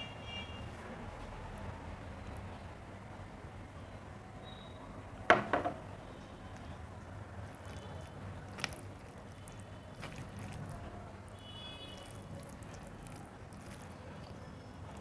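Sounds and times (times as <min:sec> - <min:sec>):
wet eating and chewing: 0:06.5 - 0:15.0.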